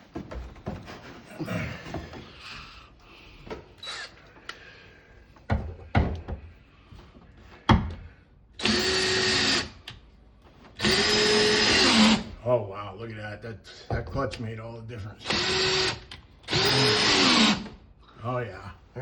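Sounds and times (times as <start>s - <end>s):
power drill whining: 3.8s - 4.2s, 8.6s - 9.9s, 10.8s - 12.3s, 15.2s - 17.8s.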